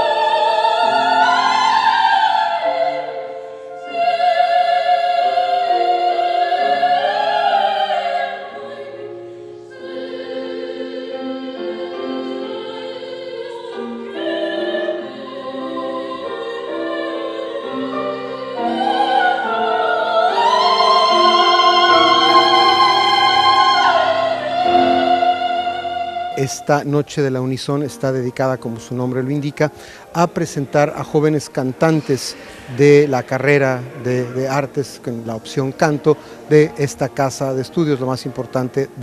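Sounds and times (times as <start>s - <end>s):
woman singing operatically: 0.0s - 8.9s, 9.9s - 26.4s
piano accompaniment: 0.0s - 39.0s.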